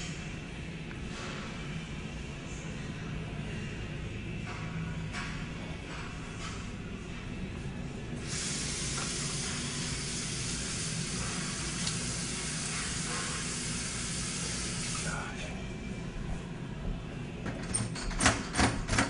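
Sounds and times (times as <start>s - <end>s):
low steady hum: 0.0s - 17.8s
steady hiss: 8.2s - 15.3s.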